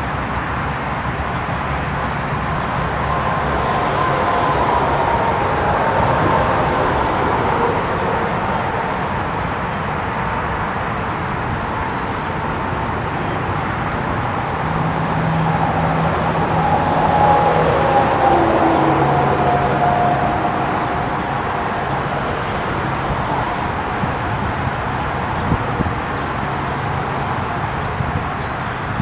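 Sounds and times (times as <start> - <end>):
highway traffic: 0.0 - 29.0
faint warning siren winding down: 2.4 - 9.3, 14.2 - 24.5.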